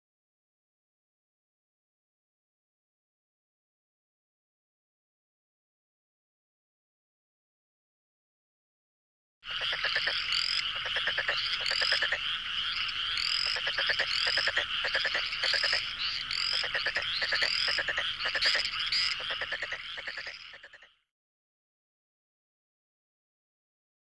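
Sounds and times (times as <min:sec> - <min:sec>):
frogs croaking: 0:09.4 - 0:21.0.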